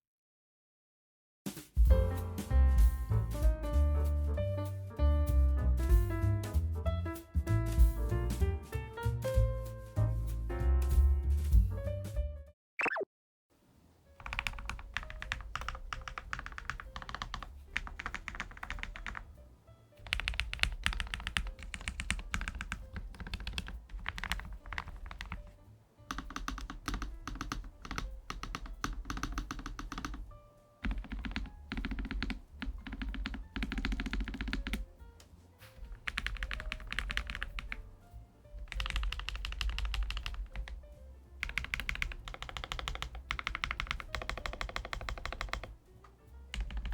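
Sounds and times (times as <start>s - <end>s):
fast typing on mechanical keyboard: 14.2s - 19.3s, 20.0s - 34.9s, 35.8s - 37.9s, 38.6s - 45.8s, 46.5s - 46.9s.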